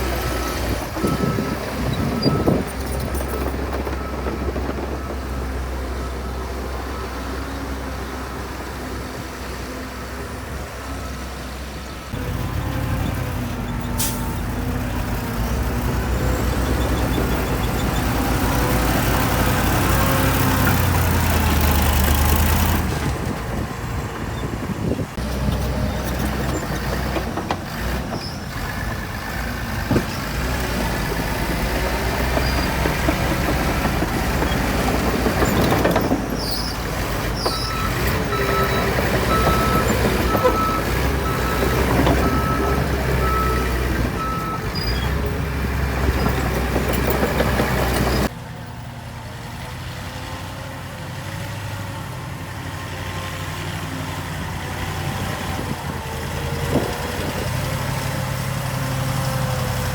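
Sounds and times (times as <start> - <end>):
diesel machinery engine running: 0.0 - 59.9
reversing alarm beeping: 0.2 - 7.1, 37.5 - 44.9.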